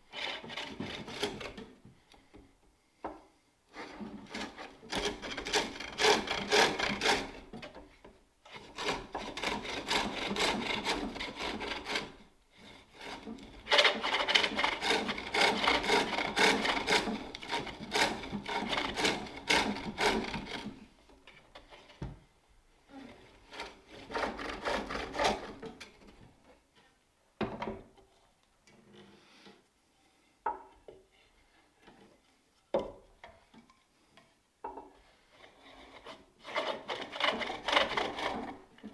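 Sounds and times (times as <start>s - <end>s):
tool scraping wood on lathe: 0.0s - 1.8s, 3.7s - 7.8s, 8.5s - 20.9s, 23.2s - 26.2s, 35.2s - 38.9s.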